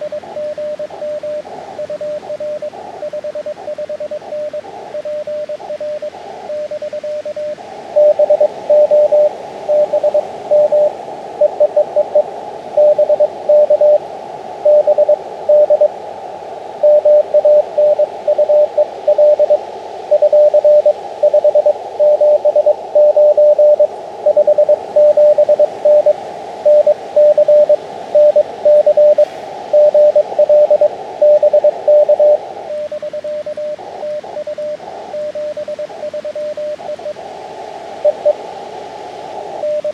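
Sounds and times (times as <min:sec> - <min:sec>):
receiver hiss: 0:00.0 - 0:39.9
morse code beeps: 0:08.0 - 0:12.2, 0:12.8 - 0:14.0, 0:14.6 - 0:15.9, 0:16.8 - 0:37.1, 0:38.0 - 0:38.4.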